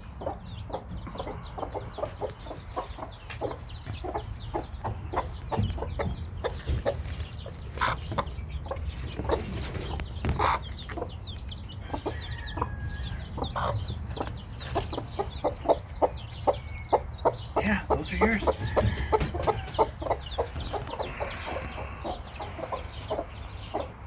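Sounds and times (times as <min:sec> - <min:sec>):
chicks peeping: 0:00.0 - 0:24.0
hens clucking: 0:00.0 - 0:24.0
loud hen calls: 0:17.6 - 0:23.3.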